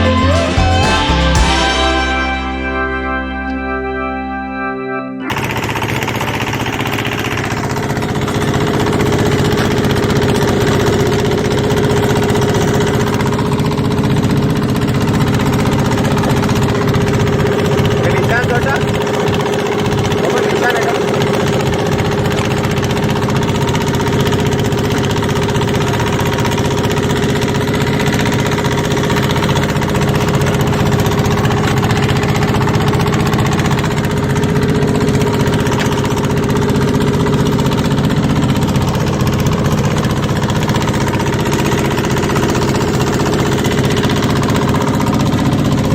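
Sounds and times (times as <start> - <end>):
boat engine droning: 0.0 - 45.9.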